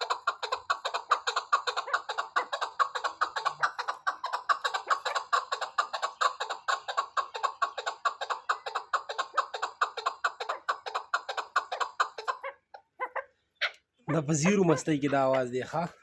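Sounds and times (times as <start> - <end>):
partridge chuck calls: 0.0 - 16.0.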